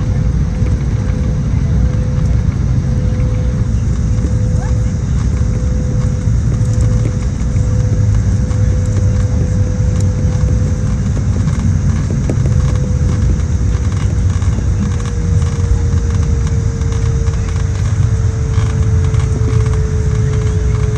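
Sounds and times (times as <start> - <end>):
airliner engine rumble: 0.0 - 20.9
engine tone sinking in pitch: 0.0 - 20.9.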